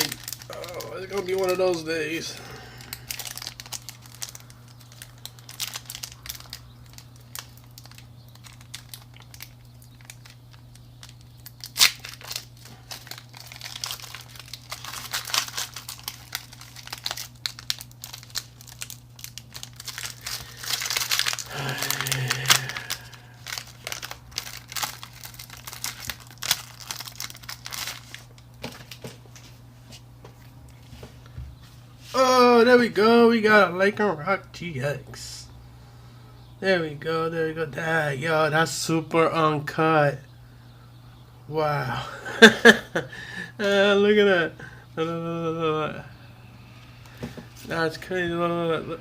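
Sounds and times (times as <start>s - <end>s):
foil tearing: 0.0s - 29.1s
foil wrappers crinkling: 0.0s - 29.6s
low electrical hum: 0.0s - 49.0s
cards being handled: 19.4s - 30.4s.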